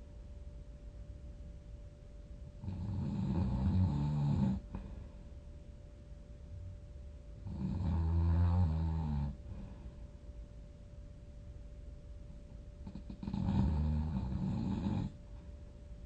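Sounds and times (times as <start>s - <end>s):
person snoring: 2.6s - 4.8s, 7.4s - 9.4s, 12.9s - 15.2s
quiet breathing: 2.6s - 5.7s, 6.5s - 10.7s.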